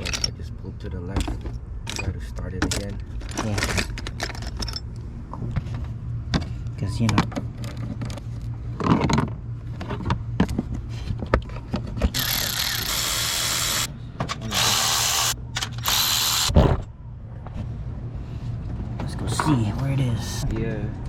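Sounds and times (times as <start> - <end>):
cordless power tool whirring: 12.1 - 16.5.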